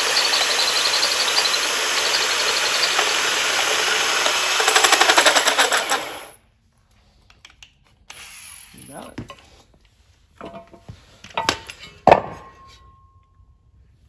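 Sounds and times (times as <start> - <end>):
power tool cutting metal: 0.0 - 6.4.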